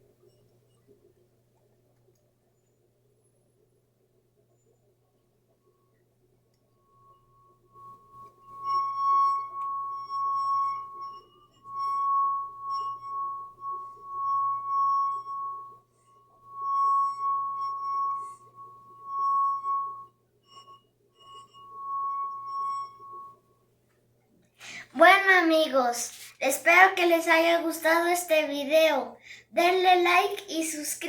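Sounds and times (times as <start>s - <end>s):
singing wine glass tone: 6.5s - 23.5s.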